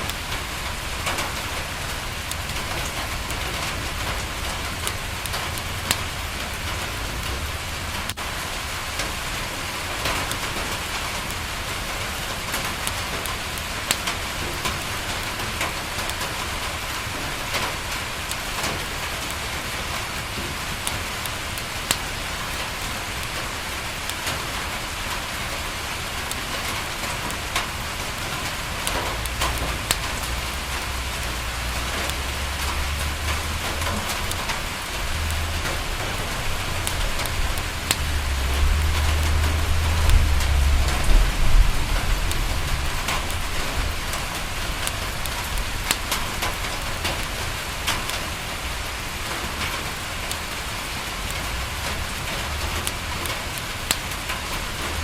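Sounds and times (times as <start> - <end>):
rain pattering on window glass: 0.0 - 55.0
wood fire crackling: 0.0 - 55.0
low rumble: 35.0 - 45.6.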